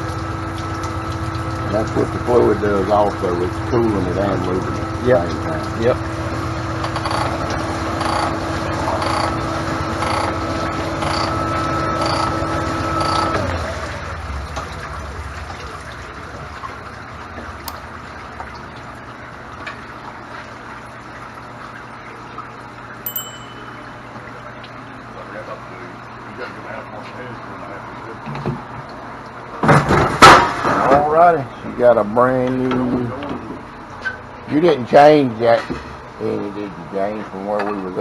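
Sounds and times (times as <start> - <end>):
low machine hum: 13.6 - 26.4.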